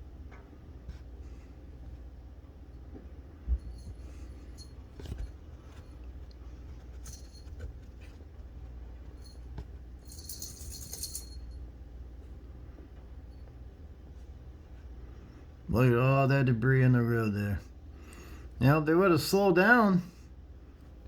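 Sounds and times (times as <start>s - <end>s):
low steady hum: 0.0s - 21.0s
high metallic jingle: 9.1s - 11.7s.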